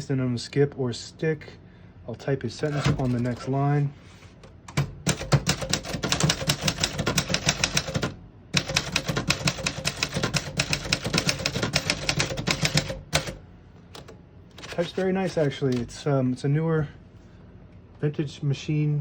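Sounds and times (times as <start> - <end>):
typewriter key strikes: 4.7 - 13.4, 14.0 - 15.9.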